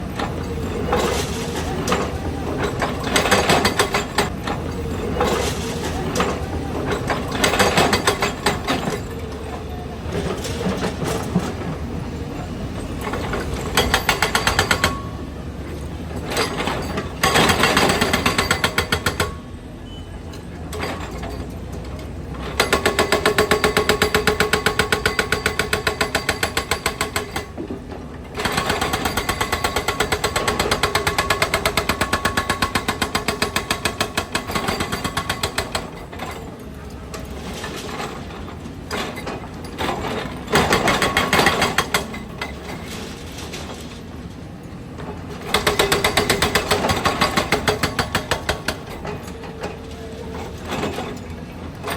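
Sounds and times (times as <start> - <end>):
road breaker hammering: 0.2 - 9.2, 13.0 - 15.2, 16.1 - 19.5, 22.4 - 36.5, 39.8 - 42.9, 45.4 - 49.6.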